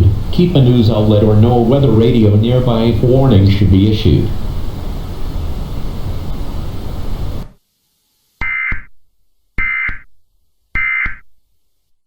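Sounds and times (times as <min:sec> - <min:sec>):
static hiss: 0:00.0 - 0:12.0
digital data bursts: 0:08.4 - 0:08.9, 0:09.6 - 0:10.1, 0:10.8 - 0:11.2.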